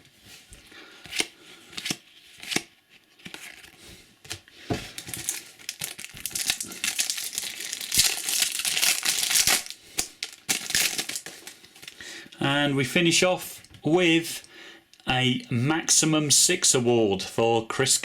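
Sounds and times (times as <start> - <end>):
crackling wrapper: 4.9 - 12.0.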